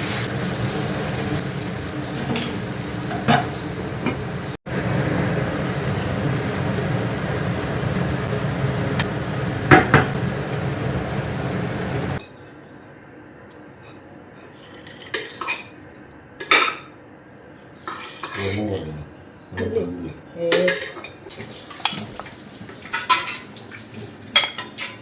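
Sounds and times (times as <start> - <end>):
food sizzling in a pan: 0.0 - 4.3, 20.7 - 25.0
steady hum: 0.0 - 12.2.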